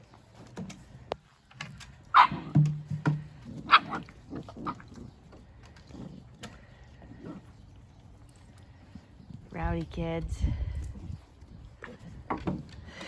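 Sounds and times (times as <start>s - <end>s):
puppies yelping: 2.1s - 2.5s, 3.4s - 8.2s
puppy growling: 3.4s - 6.4s, 7.0s - 7.7s.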